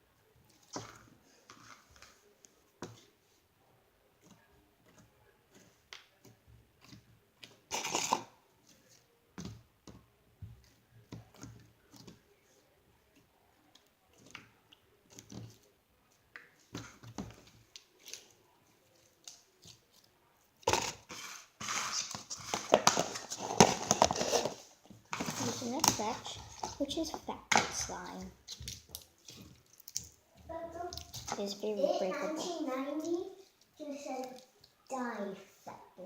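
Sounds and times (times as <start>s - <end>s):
slime squelching and popping: 4.1s - 12.3s, 25.1s - 31.4s.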